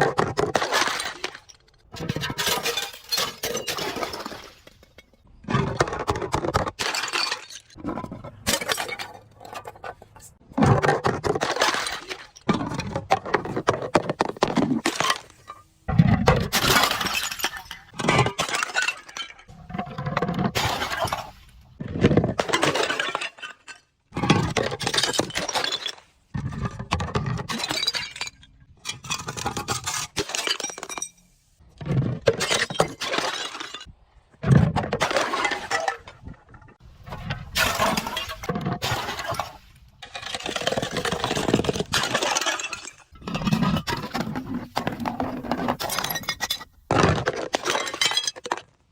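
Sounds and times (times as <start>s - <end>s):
glass shattering and crushing: 0.2s - 5.2s, 6.1s - 9.8s, 16.4s - 19.5s, 20.3s - 21.5s, 22.4s - 26.1s, 27.2s - 31.4s, 32.2s - 33.9s, 35.0s - 36.3s, 37.6s - 48.8s.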